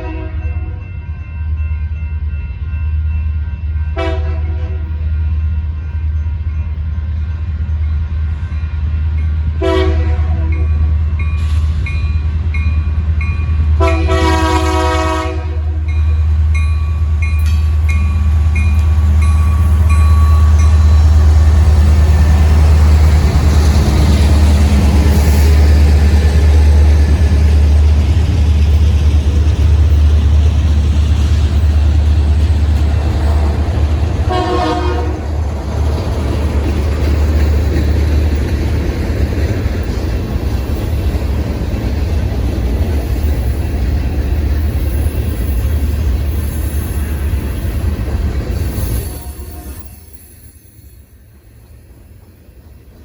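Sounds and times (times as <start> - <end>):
train horn blasts: 0.0 - 0.8, 3.9 - 5.0, 9.6 - 10.8, 13.8 - 15.9, 34.2 - 35.4, 48.9 - 50.2
diesel locomotive engine rumble: 0.0 - 53.0
crossing bell dinging: 0.2 - 7.3, 15.6 - 26.6
wheels on rails: 15.9 - 53.0.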